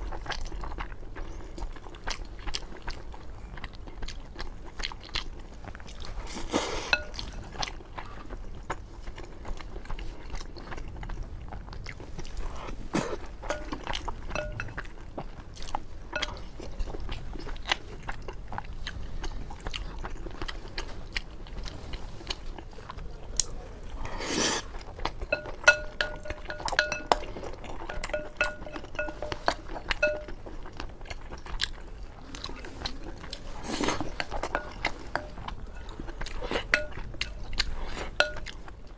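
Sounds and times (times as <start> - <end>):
person chewing food: 0.0 - 38.9
utensil clinking bowl: 6.9 - 7.3, 13.4 - 14.9, 16.2 - 16.6, 25.2 - 30.5, 34.1 - 36.0, 36.6 - 37.5, 38.2 - 38.6.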